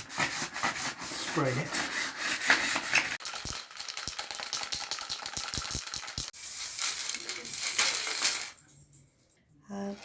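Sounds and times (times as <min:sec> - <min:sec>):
spray can ball rattling: 0:03.2 - 0:08.6.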